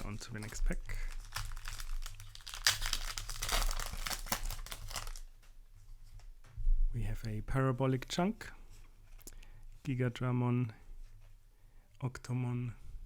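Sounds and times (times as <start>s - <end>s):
foil wrapper tearing and crinkling: 0.0s - 5.2s.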